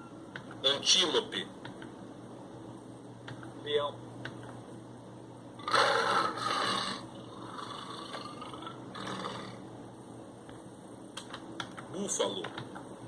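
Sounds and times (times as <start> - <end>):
lion roaring: 5.6 - 9.6.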